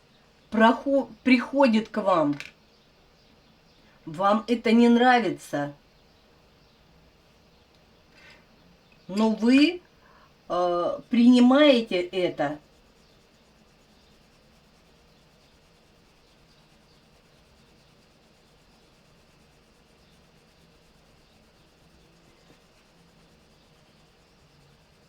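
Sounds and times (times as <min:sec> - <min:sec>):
pen rubbing on paper: 0:11.2 - 0:25.0.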